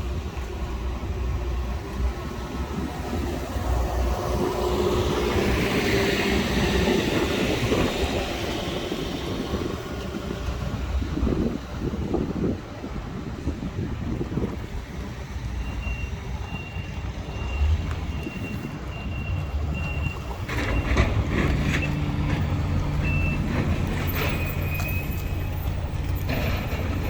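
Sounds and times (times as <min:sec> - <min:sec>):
wind rumble on microphone: 0:00.0 - 0:27.0
reversing alarm beeps: 0:15.6 - 0:23.5
diesel engine running: 0:17.0 - 0:27.0.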